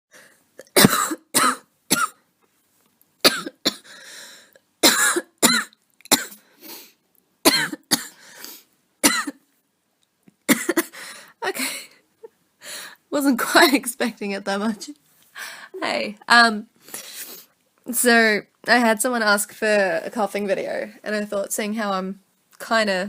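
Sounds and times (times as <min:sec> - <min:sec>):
woman coughing: 0:00.6 - 0:02.2, 0:03.3 - 0:03.8, 0:04.8 - 0:06.4, 0:07.5 - 0:08.2, 0:09.0 - 0:09.4, 0:10.5 - 0:11.9
woman drawing breath: 0:03.8 - 0:04.6, 0:08.2 - 0:08.7.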